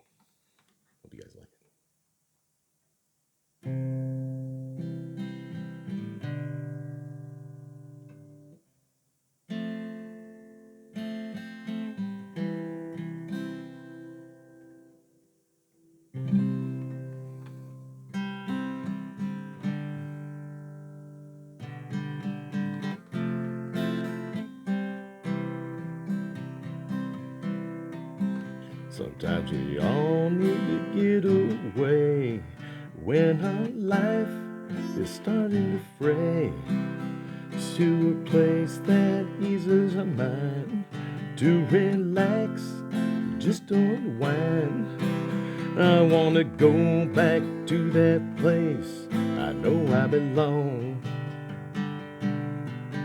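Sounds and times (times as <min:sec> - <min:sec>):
acoustic guitar chords: 0:03.6 - 0:08.6, 0:09.5 - 0:53.0.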